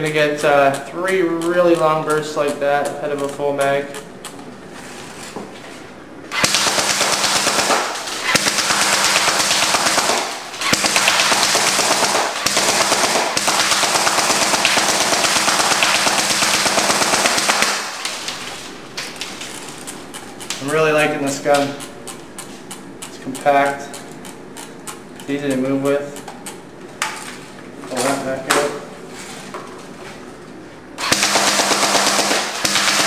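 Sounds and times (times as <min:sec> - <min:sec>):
airsoft rifle full-auto bursts: 0:06.4 - 0:18.1, 0:31.0 - 0:33.0.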